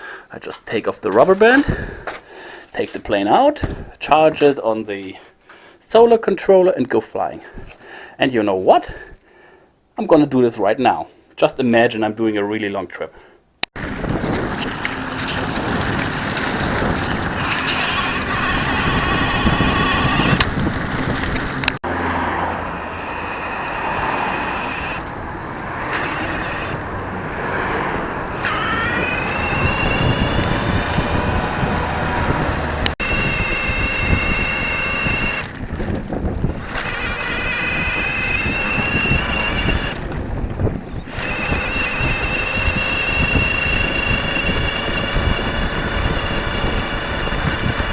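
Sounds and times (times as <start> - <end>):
wind and tyre rush: 1.2 - 2.0, 13.8 - 47.9
electric motor whining: 13.8 - 40.3, 40.9 - 47.9.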